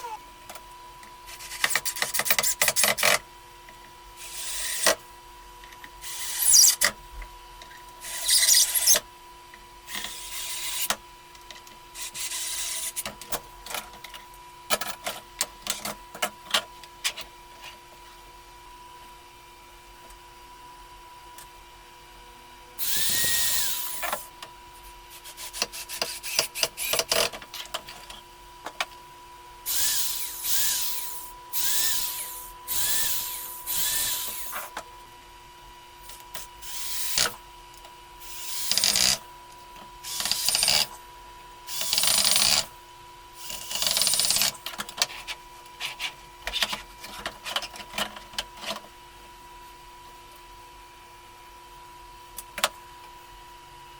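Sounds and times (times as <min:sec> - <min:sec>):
faint steady hum: 0:00.0 - 0:53.9
power drill bursts: 0:22.8 - 0:24.0, 0:29.7 - 0:34.6.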